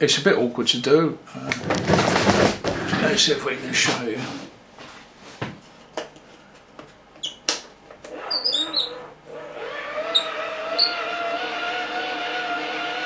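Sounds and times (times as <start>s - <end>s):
hand-cranked dynamo whine: 8.1s - 13.0s.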